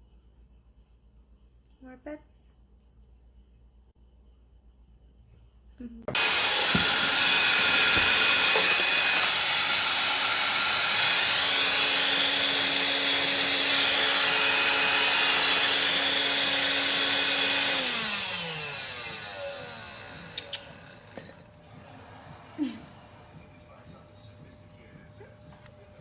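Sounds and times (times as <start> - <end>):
electric motor whining: 6.1 - 23.4
motor spinning down: 6.1 - 23.5.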